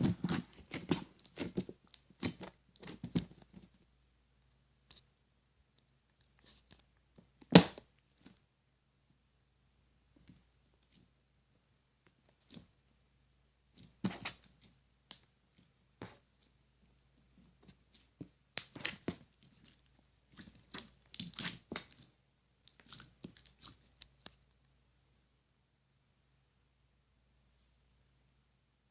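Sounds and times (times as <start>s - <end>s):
slime crackles and pops: 7.4s - 8.3s, 18.0s - 22.1s.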